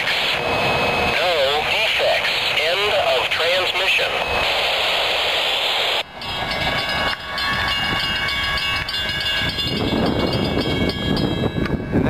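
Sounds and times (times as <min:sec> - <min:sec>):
freight train rumble: 0:00.0 - 0:12.0
crossing bell ringing: 0:06.1 - 0:12.0.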